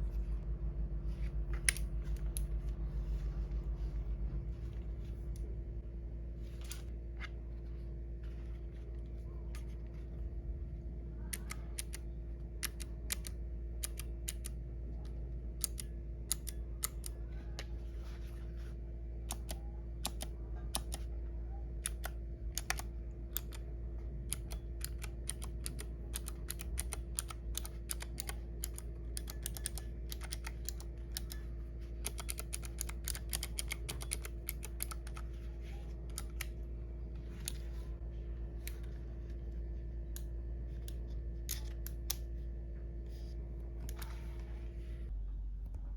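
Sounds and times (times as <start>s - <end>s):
clicky keyboard keystrokes: 11.3s - 12.0s, 12.6s - 14.6s, 15.6s - 17.2s, 19.3s - 21.1s, 21.8s - 23.6s, 24.3s - 31.4s, 32.0s - 36.5s.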